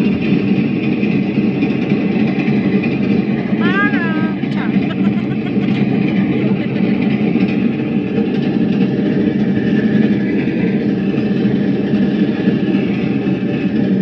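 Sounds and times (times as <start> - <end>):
tour train engine rumbling: 0.0 - 14.0.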